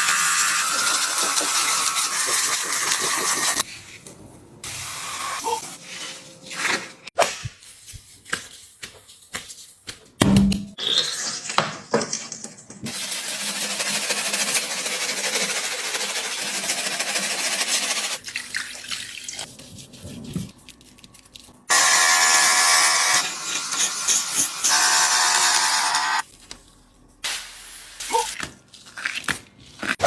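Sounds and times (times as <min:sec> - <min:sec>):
water running from a tap: 0:00.0 - 0:03.6
small motor buzzing: 0:21.7 - 0:26.2.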